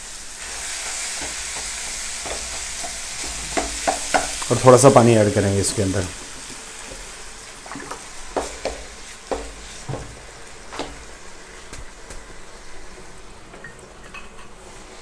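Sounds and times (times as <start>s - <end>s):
food sizzling in a pan: 0.0s - 15.0s
spoon knocking against pan: 1.2s - 4.5s, 8.4s - 10.1s.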